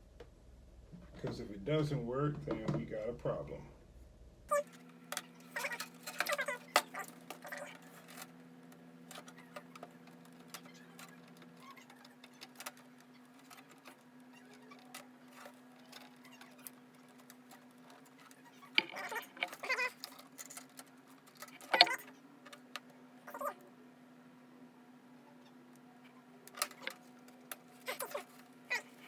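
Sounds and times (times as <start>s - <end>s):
steady low hum: 0.0s - 29.0s
clicks of handling computer parts: 4.7s - 14.0s, 14.7s - 22.9s, 26.5s - 28.8s.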